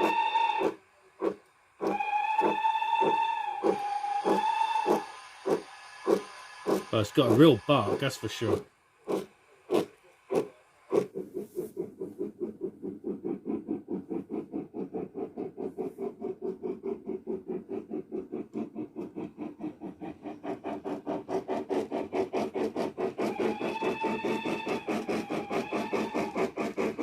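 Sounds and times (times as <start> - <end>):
steam locomotive chuffing from speaker: 0.0 - 27.0
steady high tone: 3.8 - 8.6.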